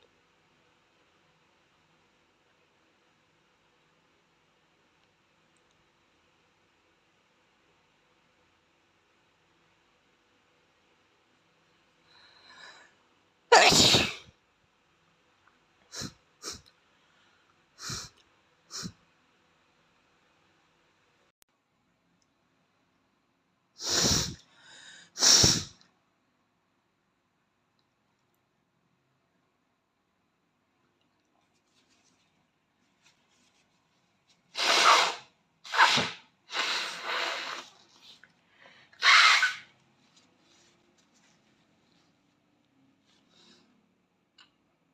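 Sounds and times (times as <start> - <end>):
faint breath: 12.0 - 13.1, 23.8 - 25.8, 38.2 - 39.0, 43.0 - 43.9
man sneezing: 13.5 - 14.2
boy sneezing: 13.5 - 14.3, 34.6 - 37.6.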